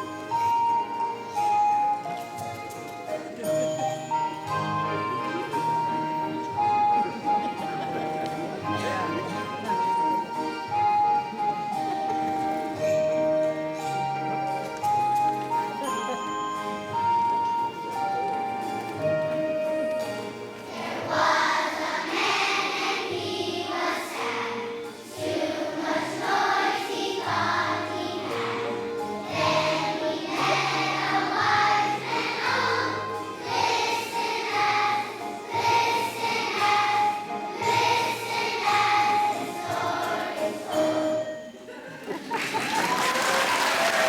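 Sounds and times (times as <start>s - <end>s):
instrumental accompaniment with bass: 0.0s - 21.6s
children's choir singing: 0.0s - 42.4s.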